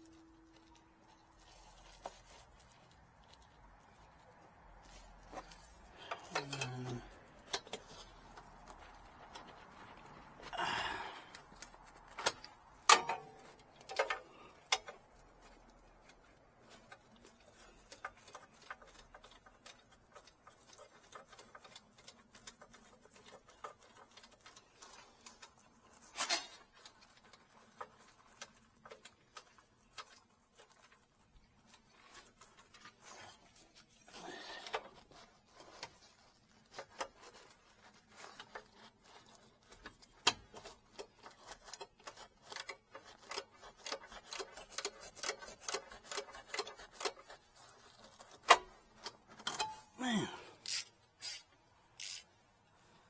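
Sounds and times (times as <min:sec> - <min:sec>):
socket wrench ratcheting: 0:43.3 - 0:47.1, 0:50.6 - 0:51.4, 0:52.0 - 0:52.2.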